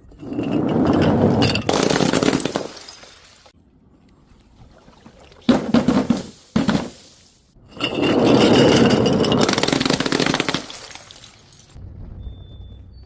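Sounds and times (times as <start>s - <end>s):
glass shattering: 0.4s - 3.5s, 7.8s - 11.8s.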